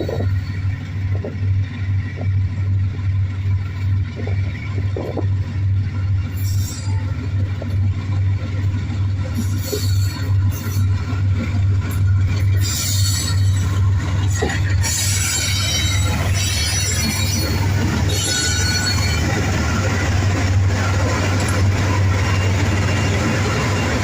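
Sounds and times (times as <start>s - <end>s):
train rumbling on rails: 0.0s - 24.0s
high wheel squeal: 6.3s - 7.2s, 9.3s - 11.0s, 11.9s - 24.0s.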